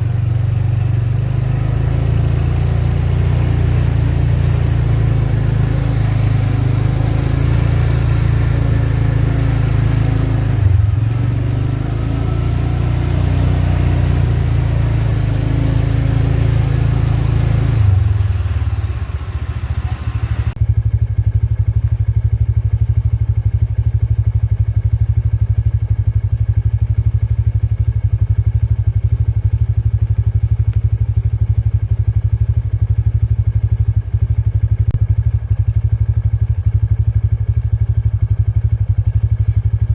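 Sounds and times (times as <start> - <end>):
tractor diesel engine running: 0.0 - 21.4, 34.4 - 39.9
baler working: 2.1 - 12.9, 14.0 - 20.6.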